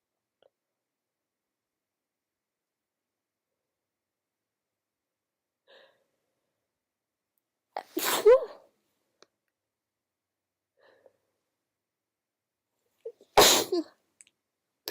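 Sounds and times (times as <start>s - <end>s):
woman sneezing: 7.8s - 8.6s, 13.3s - 13.9s.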